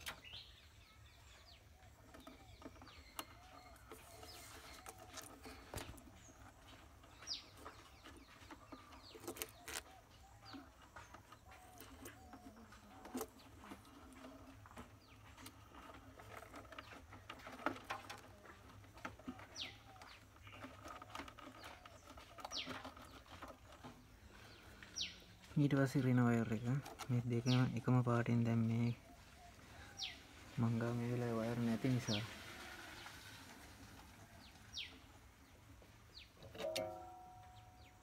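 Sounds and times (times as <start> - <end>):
low wavering bird calls: 7.1 - 15.8, 26.5 - 38.0.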